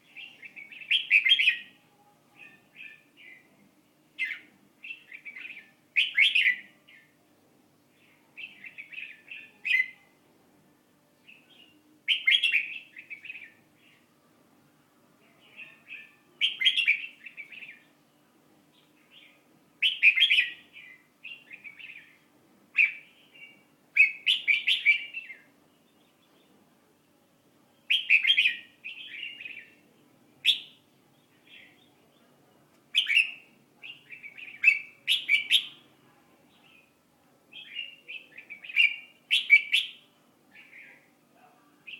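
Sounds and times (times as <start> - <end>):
faint steady hum: 0.0 - 41.9
songbird chirping: 0.0 - 41.9.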